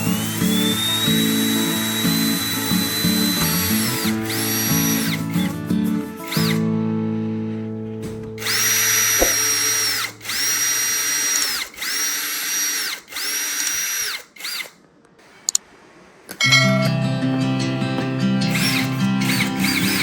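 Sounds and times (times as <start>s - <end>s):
electric drill whine: 0.0s - 5.5s, 6.2s - 6.6s, 8.4s - 14.7s, 18.5s - 20.0s.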